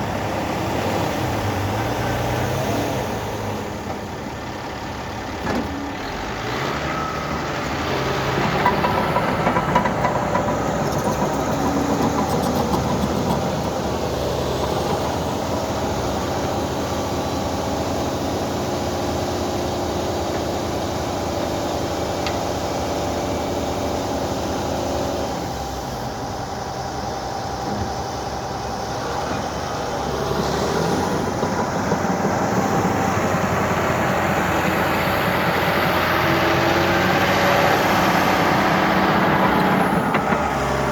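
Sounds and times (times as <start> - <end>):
heavy diesel machinery engine: 0.0 - 40.9.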